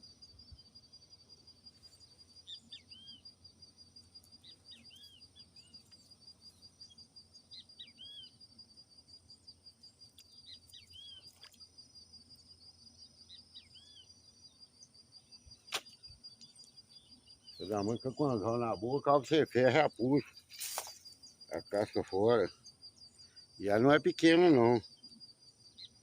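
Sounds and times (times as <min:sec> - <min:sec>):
bird chirping: 0:01.8 - 0:03.3, 0:04.2 - 0:08.4, 0:09.9 - 0:11.6, 0:13.0 - 0:26.0.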